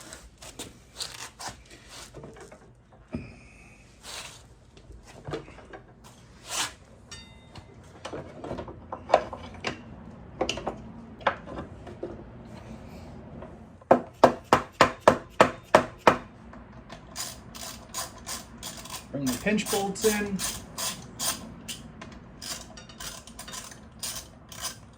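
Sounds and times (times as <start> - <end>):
tools clicking and scraping metal: 17.0 - 24.9.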